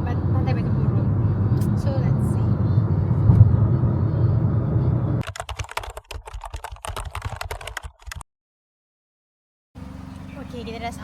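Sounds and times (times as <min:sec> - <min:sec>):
car interior rumble: 0:00.0 - 0:05.2
rapid irregular clicking: 0:05.2 - 0:08.2.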